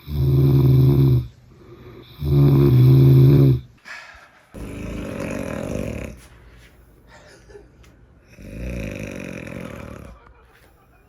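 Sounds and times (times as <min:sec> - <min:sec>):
person snoring: 0:00.0 - 0:03.7, 0:04.6 - 0:06.3, 0:08.3 - 0:10.2.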